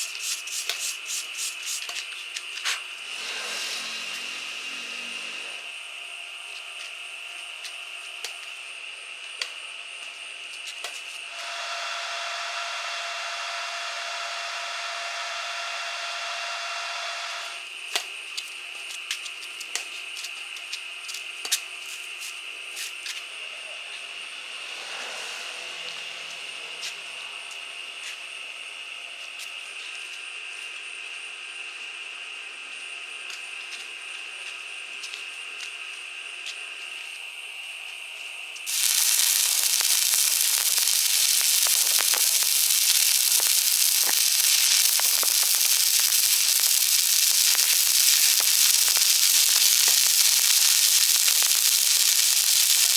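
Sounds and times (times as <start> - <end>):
welding arc hissing and popping: 0.0 - 5.6, 7.6 - 8.6, 10.5 - 23.2, 38.6 - 52.9.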